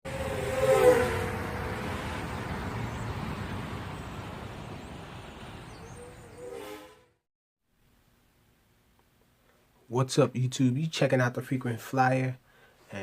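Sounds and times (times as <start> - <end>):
vehicle passing close: 0.1 - 7.2.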